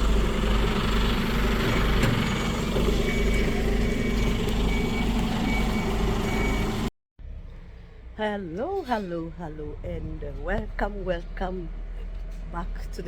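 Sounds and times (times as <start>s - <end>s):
garbage truck engine rumble: 0.0s - 13.0s
reversing alarm beeping: 1.9s - 6.9s.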